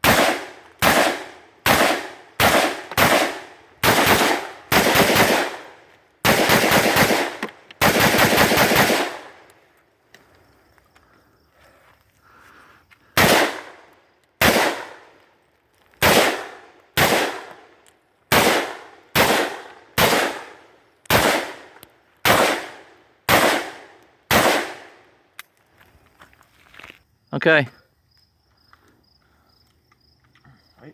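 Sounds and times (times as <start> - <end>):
rifle shots with echo: 0.0 - 9.5, 13.2 - 15.2, 16.0 - 25.1.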